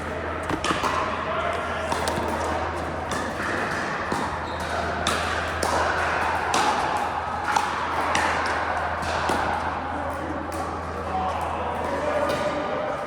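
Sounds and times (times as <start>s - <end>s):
paddles striking plastic ball: 0.4s - 1.0s.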